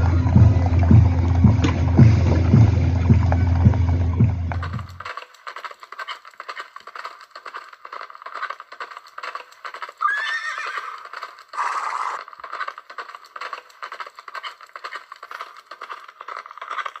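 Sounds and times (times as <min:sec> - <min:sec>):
horse hooves clip-clopping: 0:00.0 - 0:17.0
horse whinnying: 0:10.0 - 0:12.7.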